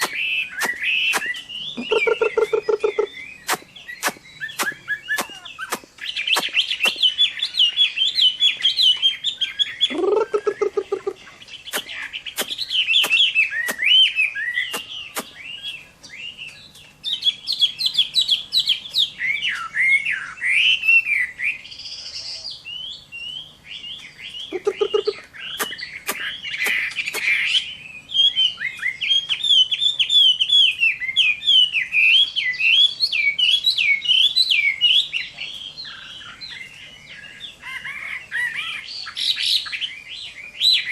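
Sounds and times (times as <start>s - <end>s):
sharp clicks: 0.0s - 1.4s, 3.5s - 7.0s
short low bird call: 0.0s - 7.1s
bird whistling and warbling song: 0.0s - 40.9s.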